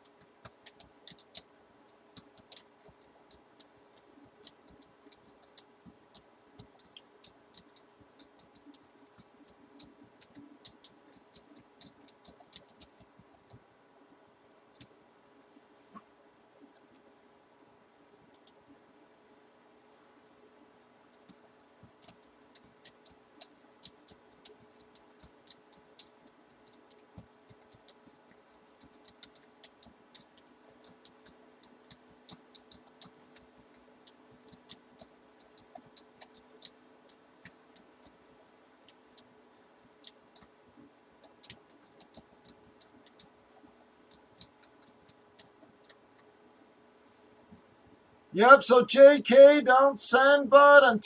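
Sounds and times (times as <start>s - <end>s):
faint steady hum: 0.0s - 51.0s
computer mouse clicking: 0.1s - 13.6s, 14.7s - 15.0s, 18.3s - 18.6s, 21.1s - 46.3s.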